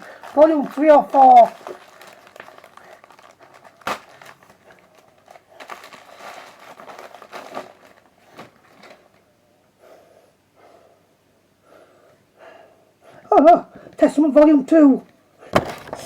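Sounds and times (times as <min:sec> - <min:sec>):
packaging crinkling and rustling: 0:00.0 - 0:09.3, 0:15.5 - 0:16.0.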